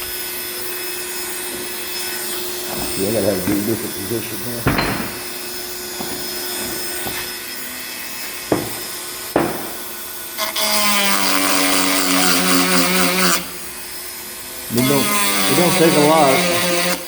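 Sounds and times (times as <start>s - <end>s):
rotary tool grinding whine: 0.0s - 17.0s
knocks: 4.6s - 5.2s, 8.5s - 9.8s.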